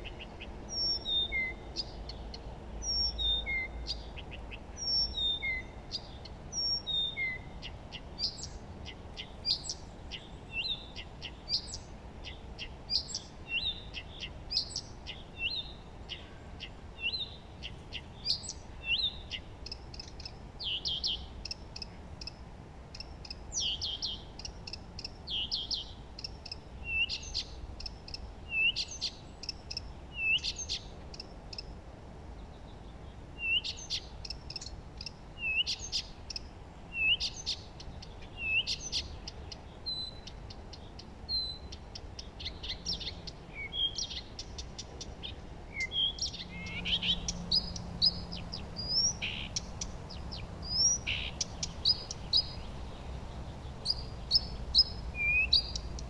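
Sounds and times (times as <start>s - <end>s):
songbirds singing: 0.0s - 56.0s
downward-slurred bird calls: 41.4s - 53.0s.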